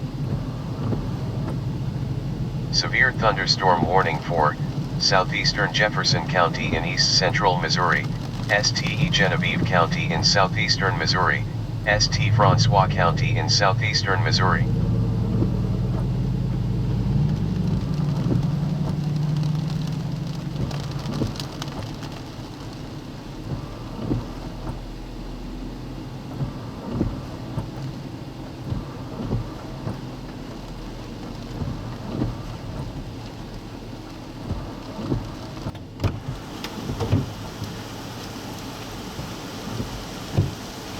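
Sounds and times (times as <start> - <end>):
rain against a car: 0.0 - 40.9
low hum: 0.4 - 21.0.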